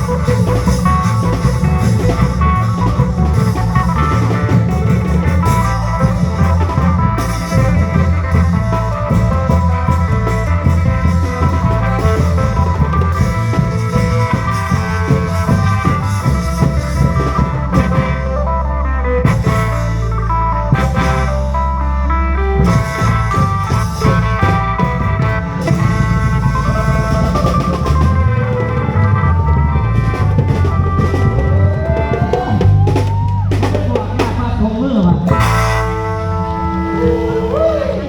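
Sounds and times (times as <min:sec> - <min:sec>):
drumming: 0:00.0 - 0:38.0
heavy bass line: 0:00.0 - 0:38.0
plucked string melody: 0:00.0 - 0:38.0.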